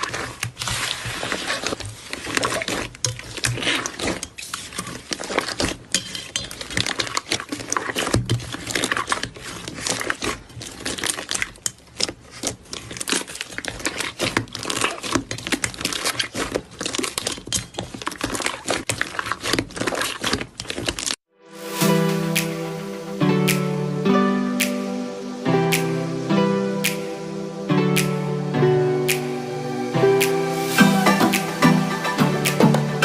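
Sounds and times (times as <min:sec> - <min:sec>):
slime squished by hand: 0:00.0 - 0:21.2.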